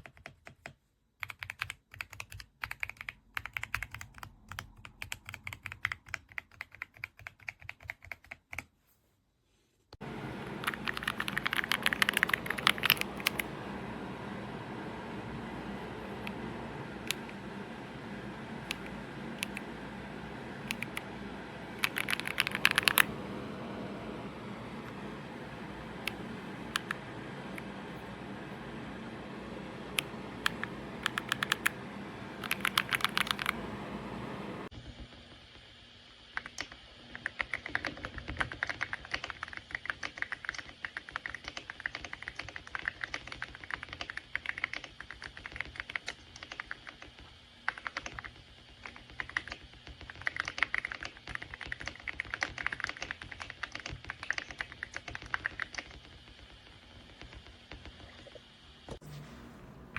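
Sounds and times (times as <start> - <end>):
mechanical keyboard typing: 0.0 - 8.7, 10.1 - 34.6.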